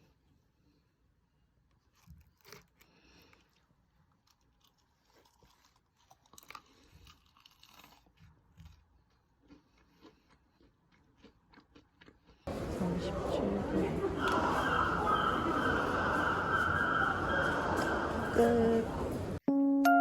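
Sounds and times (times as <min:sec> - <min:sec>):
person chewing crunchy food: 0:01.7 - 0:12.5.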